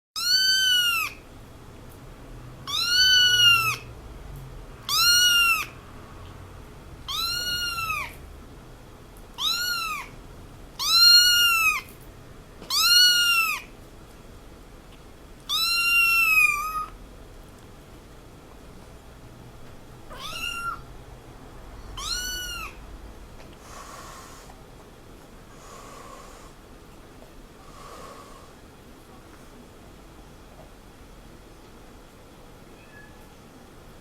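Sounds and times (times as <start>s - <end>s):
kitten meowing: 0.2s - 1.2s, 2.7s - 3.8s, 4.9s - 5.8s, 7.1s - 8.2s, 9.4s - 10.2s, 10.8s - 11.9s, 12.7s - 13.7s, 15.5s - 17.0s, 20.1s - 20.9s, 22.0s - 22.8s, 32.8s - 33.3s.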